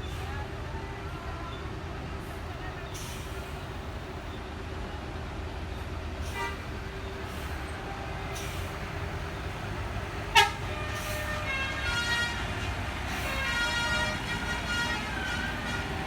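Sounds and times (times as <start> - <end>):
bus engine rumbling: 0.0 - 16.0
multi-tone air horn tune: 10.3 - 16.0
sharp horn blast: 13.1 - 16.0.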